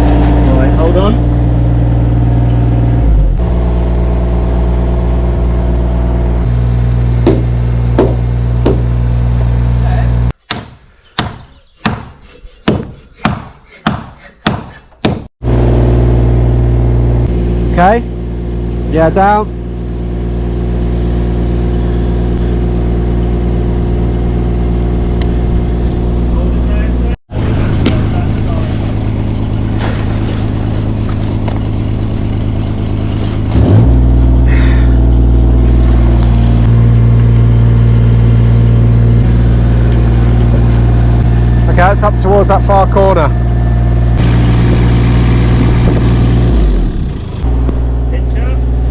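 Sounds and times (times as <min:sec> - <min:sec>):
steady engine drone: 0:00.0 - 0:10.4, 0:15.4 - 0:48.9
mallet knocking on wood: 0:07.2 - 0:08.9, 0:10.5 - 0:15.3.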